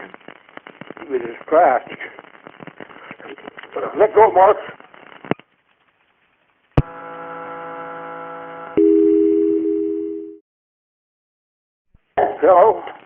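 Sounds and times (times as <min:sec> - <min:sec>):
multi-tone telephone buzz: 0:06.8 - 0:10.4.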